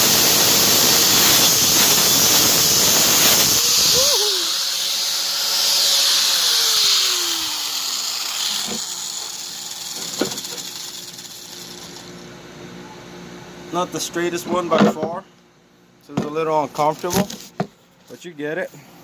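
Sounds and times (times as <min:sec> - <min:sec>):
angle grinder cutting bolt: 0:00.0 - 0:12.2
grinder motor whining down: 0:00.0 - 0:12.2.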